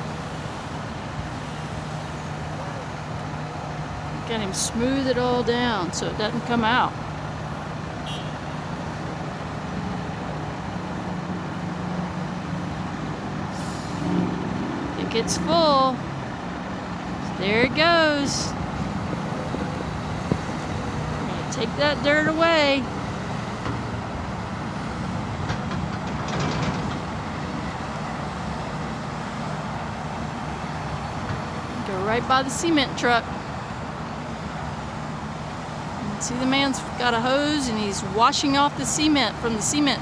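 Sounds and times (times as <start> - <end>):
diesel machinery engine hum: 0.0 - 40.0
rattling clanks: 25.4 - 27.2.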